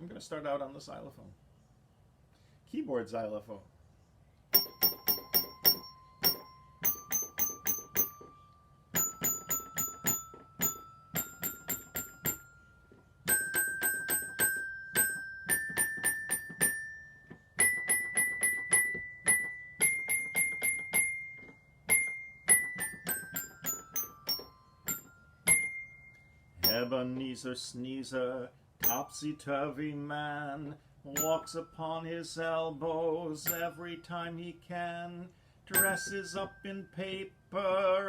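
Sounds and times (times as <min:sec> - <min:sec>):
xylophone notes: 0:04.6 - 0:27.4, 0:28.8 - 0:29.3, 0:31.2 - 0:32.2, 0:33.4 - 0:34.0, 0:35.7 - 0:37.2.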